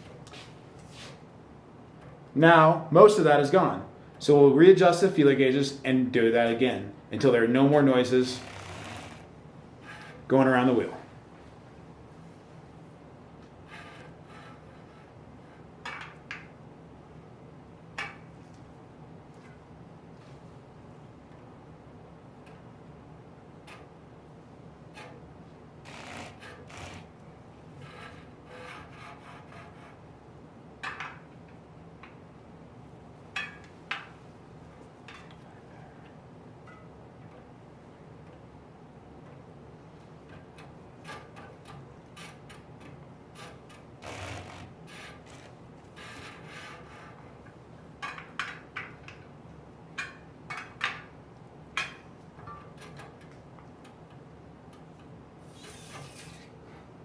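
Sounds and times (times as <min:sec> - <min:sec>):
bicycle rim scratching gauge: 0:08.3 - 0:10.3, 0:13.6 - 0:15.7, 0:25.9 - 0:27.2, 0:27.8 - 0:30.1, 0:43.4 - 0:47.2, 0:55.4 - 0:56.6.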